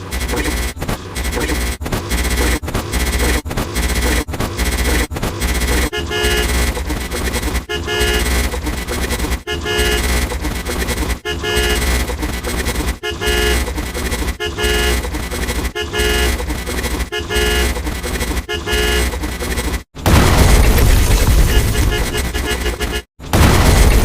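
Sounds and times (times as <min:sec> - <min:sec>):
distorted horn sound effect: 0:00.0 - 0:24.0
loud booming burst: 0:20.0 - 0:22.4, 0:23.3 - 0:24.0.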